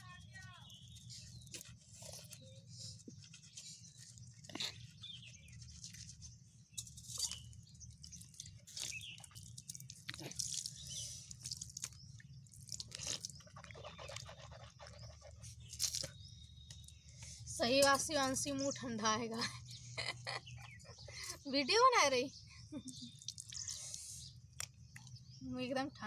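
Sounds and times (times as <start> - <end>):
faint low hum: 0.0 - 26.0
toothbrush scrubbing teeth: 12.6 - 16.2.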